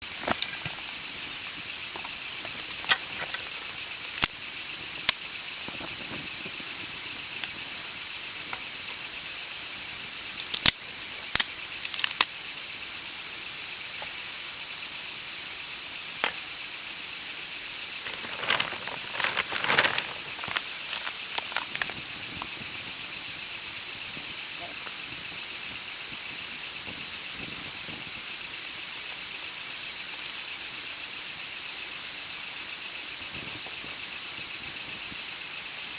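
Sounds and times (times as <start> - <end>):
rustling: 0.1 - 4.3, 18.0 - 22.5.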